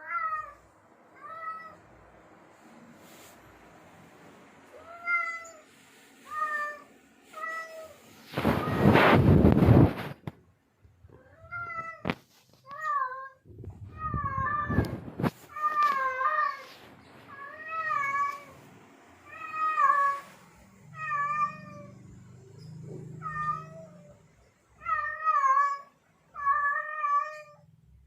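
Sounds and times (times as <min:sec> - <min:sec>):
low rumbling noise: 0:08.2 - 0:11.6, 0:13.4 - 0:15.6
cat yowling: 0:20.9 - 0:22.0, 0:24.8 - 0:27.6.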